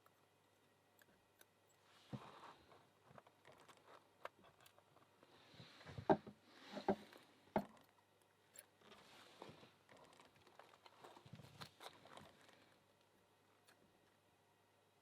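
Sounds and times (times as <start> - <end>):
small clicks of lock parts: 3.1 - 5.1, 7.0 - 9.0
soft rubbery glove rustle: 8.8 - 12.8.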